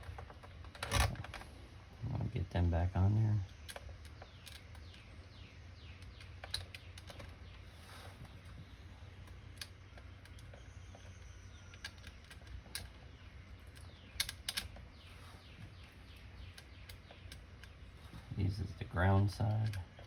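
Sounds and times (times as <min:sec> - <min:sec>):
low steady hum: 0:00.0 - 0:20.0
nuts and wrench clicking: 0:03.5 - 0:05.1, 0:09.1 - 0:15.0, 0:15.7 - 0:18.0.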